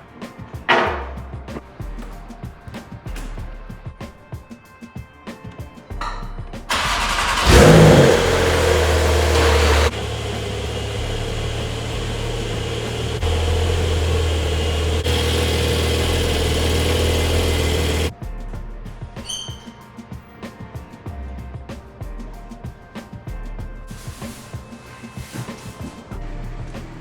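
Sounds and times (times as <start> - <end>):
car engine starting and idling: 6.7 - 18.1.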